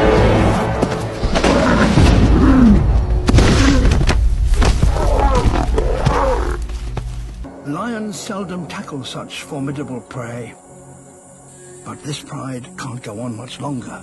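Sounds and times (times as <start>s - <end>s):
lions calling: 4.6s - 6.7s.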